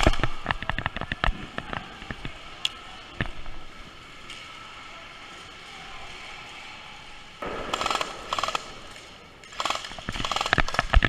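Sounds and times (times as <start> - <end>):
airsoft gun firing full auto: 7.4 - 11.0.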